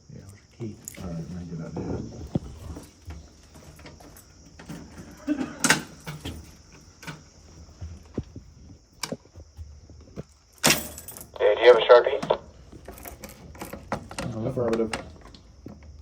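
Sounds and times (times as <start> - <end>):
steady high hiss: 10.6 - 13.2
objects knocking and clicking: 12.2 - 16.0.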